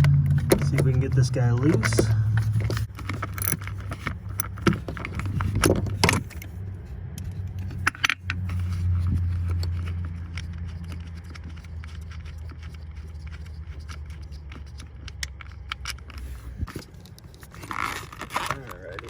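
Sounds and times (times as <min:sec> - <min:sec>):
low hum: 0:00.0 - 0:18.2
metal tools clinking: 0:00.4 - 0:06.4.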